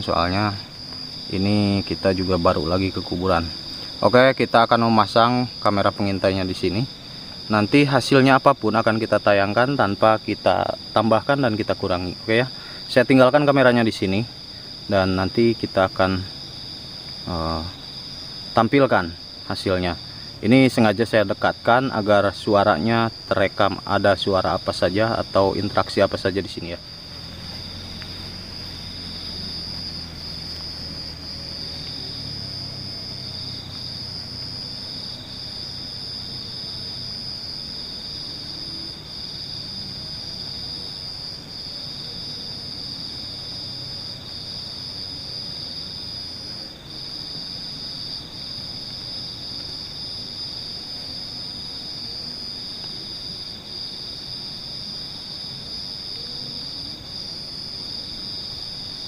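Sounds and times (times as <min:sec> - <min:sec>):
crickets trilling: 0:00.0 - 0:59.0
low hum: 0:25.2 - 0:40.2.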